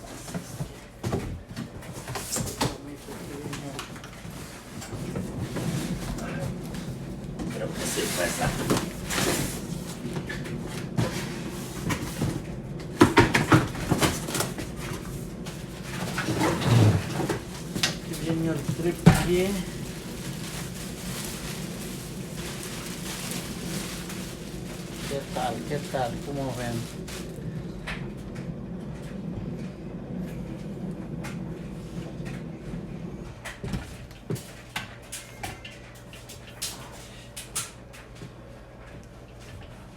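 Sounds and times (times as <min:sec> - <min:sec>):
low rumble: 0:14.7 - 0:33.6.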